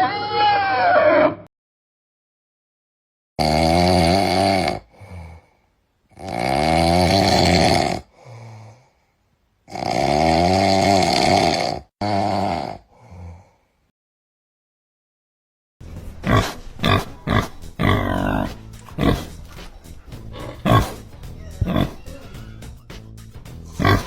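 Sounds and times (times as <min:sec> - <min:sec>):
pig squealing calls: 0:16.2 - 0:22.8, 0:23.7 - 0:24.0.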